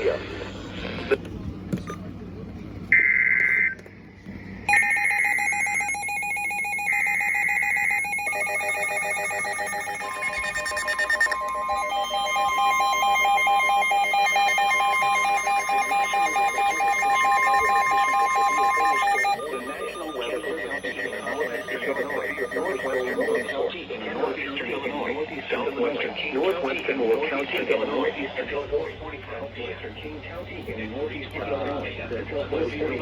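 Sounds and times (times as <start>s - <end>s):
screeching digital data tones: 4.7s - 23.5s
two-tone attention signal: 4.7s - 23.5s
pulsing alarm tones: 4.7s - 23.6s.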